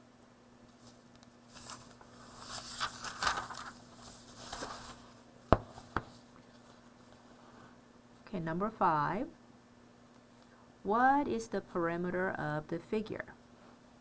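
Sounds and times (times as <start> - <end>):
paper rustling: 0.7 - 5.2.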